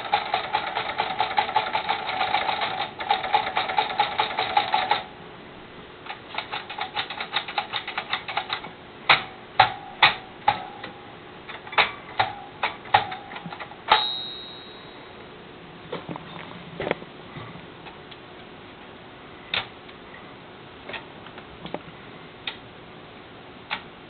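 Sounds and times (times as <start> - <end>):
typewriter metallic ringing: 12.2 - 15.1.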